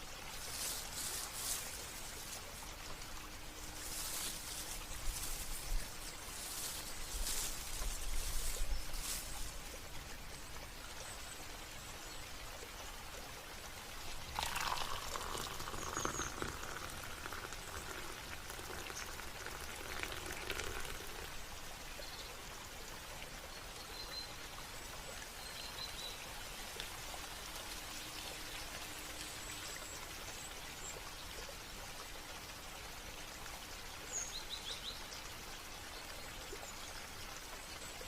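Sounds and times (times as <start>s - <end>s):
running and dripping water: 0.0s - 38.0s
splashing water: 14.1s - 21.4s.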